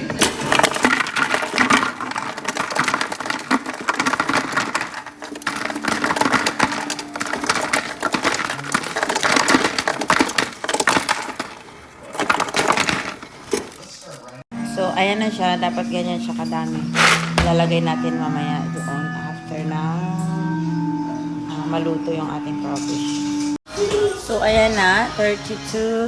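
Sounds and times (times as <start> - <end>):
ice cubes clattering: 0.0 - 14.4, 16.8 - 19.0.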